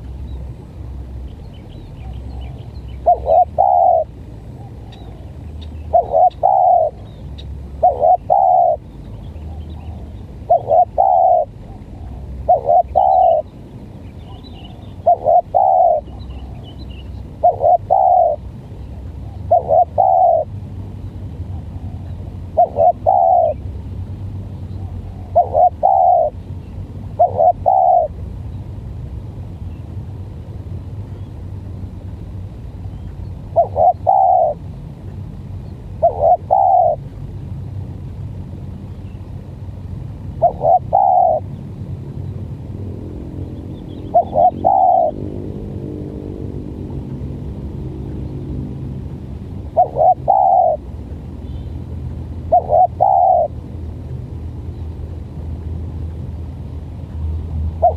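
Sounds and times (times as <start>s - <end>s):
faint engine hum: 0.0s - 57.9s
steady low rumble: 0.0s - 57.9s
doves cooing: 2.0s - 7.2s, 7.8s - 13.5s, 14.3s - 18.5s, 19.2s - 20.5s, 21.5s - 23.6s, 24.7s - 26.4s, 27.2s - 28.2s, 33.5s - 34.6s, 36.0s - 37.1s, 40.4s - 41.5s, 43.8s - 45.8s, 49.7s - 50.8s, 52.5s - 53.6s.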